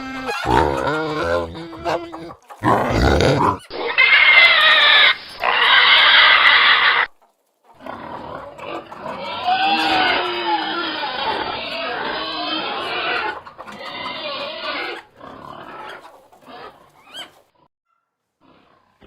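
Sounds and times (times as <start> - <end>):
pig squealing: 0.0 - 7.1, 7.8 - 17.5
pigs grunting: 0.0 - 7.1, 7.8 - 17.7, 18.4 - 19.0.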